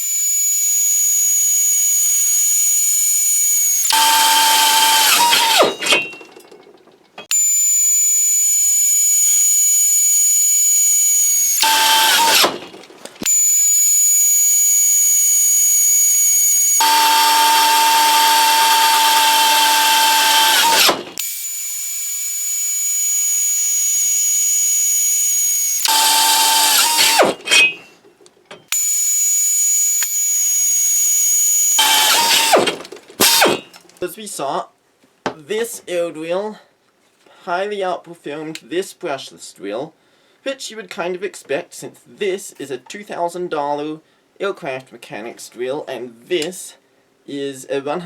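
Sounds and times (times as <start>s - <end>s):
cordless drill motor whine: 0.0s - 5.9s, 7.3s - 27.5s, 28.7s - 33.6s
air drill hissing and whining: 0.0s - 6.0s, 7.3s - 27.8s, 28.7s - 33.7s.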